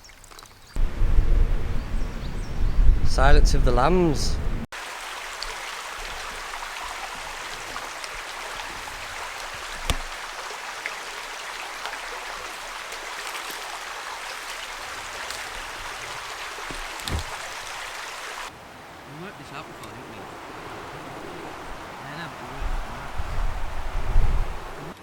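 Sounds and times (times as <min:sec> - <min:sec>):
low thump: 0:16.7 - 0:17.5.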